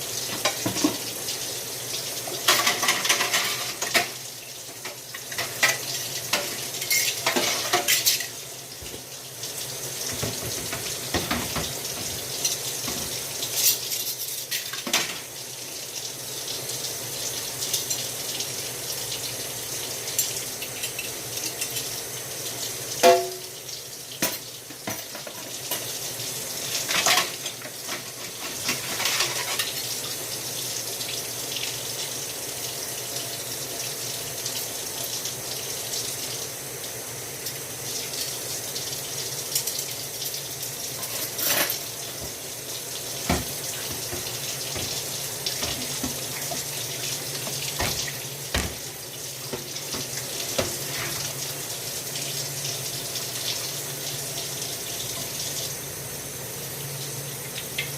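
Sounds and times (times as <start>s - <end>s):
tap running into sink: 0.3s - 1.2s, 8.8s - 9.1s, 10.0s - 13.2s, 24.2s - 25.9s, 41.0s - 42.4s, 43.2s - 46.7s, 47.3s - 51.4s
dishes clinking: 5.3s - 8.4s, 23.0s - 23.4s, 41.0s - 41.8s.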